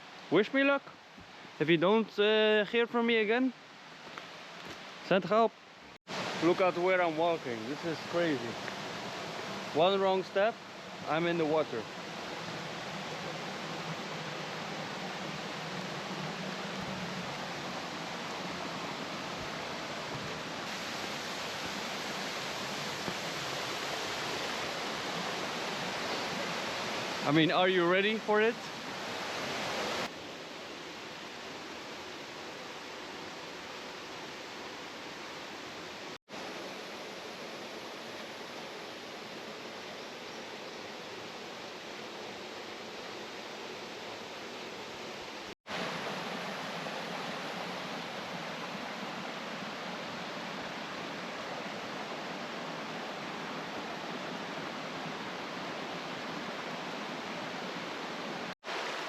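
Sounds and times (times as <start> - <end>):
waterfall rushing: 6.1 - 30.1, 44.8 - 59.0.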